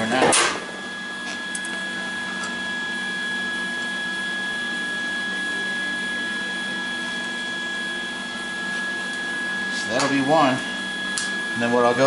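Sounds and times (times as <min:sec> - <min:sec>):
machine humming with high whine: 0:00.0 - 0:12.0.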